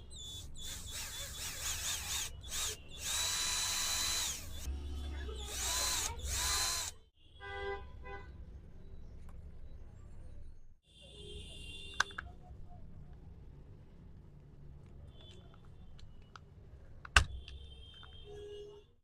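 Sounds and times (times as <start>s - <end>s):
cordless screwdriver motor whine: 0.2s - 4.7s, 5.5s - 6.9s.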